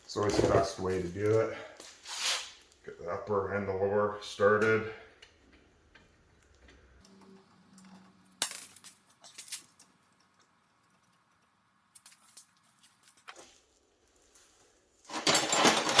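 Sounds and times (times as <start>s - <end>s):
metal nuts clinking: 7.8s - 10.3s, 15.1s - 16.0s.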